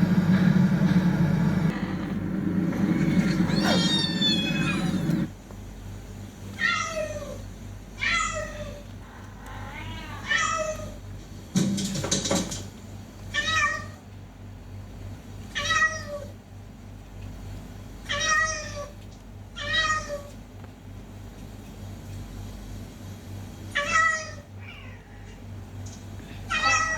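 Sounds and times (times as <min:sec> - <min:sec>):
low rumble: 0:00.0 - 0:05.3
cat meowing: 0:01.7 - 0:05.3, 0:06.6 - 0:07.4, 0:08.0 - 0:11.0, 0:13.3 - 0:14.0, 0:15.6 - 0:16.3, 0:18.1 - 0:19.0, 0:19.6 - 0:20.4, 0:23.8 - 0:25.4, 0:26.5 - 0:26.9.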